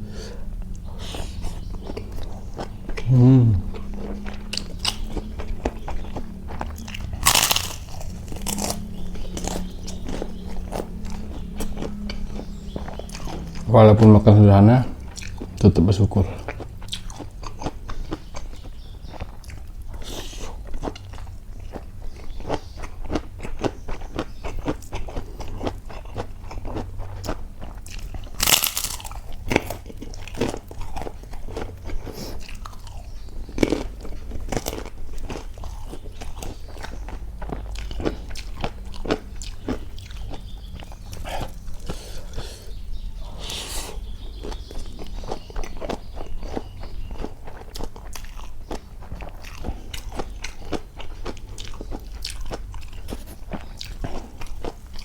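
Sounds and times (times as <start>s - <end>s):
low steady hum: 0.0s - 23.1s
person chewing crunchy food: 0.0s - 55.0s.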